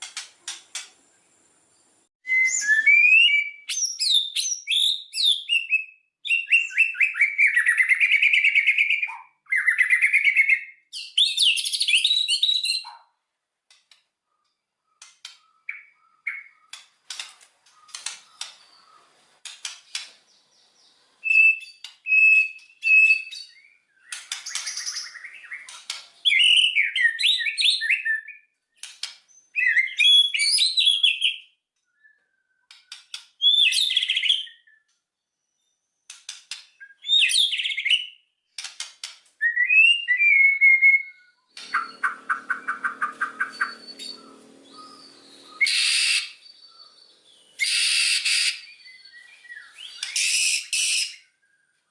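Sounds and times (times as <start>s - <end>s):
bird singing loudly: 2.2s - 13.0s, 20.3s - 28.5s, 29.5s - 31.4s, 39.4s - 51.5s.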